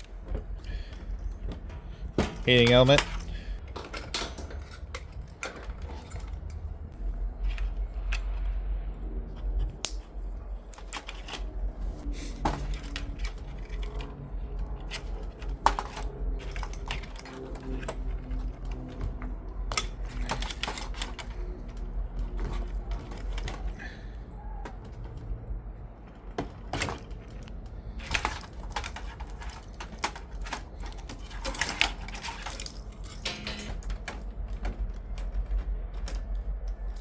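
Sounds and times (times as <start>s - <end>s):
hand tools clicking and clinking: 0.0s - 6.8s, 10.7s - 25.4s, 26.4s - 37.0s
low steady rumble: 0.0s - 20.4s.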